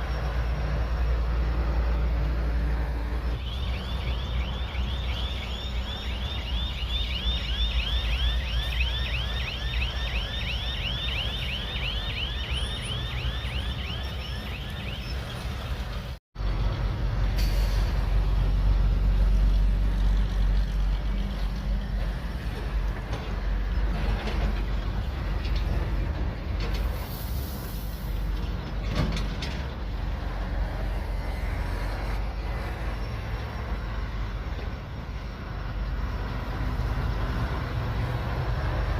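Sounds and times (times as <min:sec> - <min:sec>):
bulldozer diesel engine: 0:00.0 - 0:38.9
high squeal from tracks: 0:02.9 - 0:15.8, 0:26.7 - 0:29.6.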